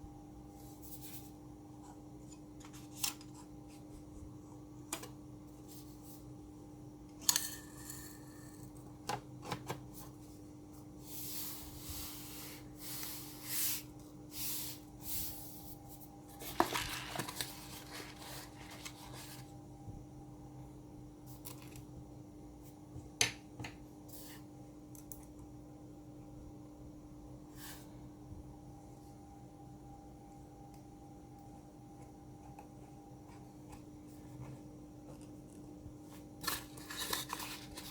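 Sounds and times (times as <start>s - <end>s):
steady low hum: 0.0s - 37.9s
rustling and scraping: 15.1s - 19.5s, 34.1s - 37.9s.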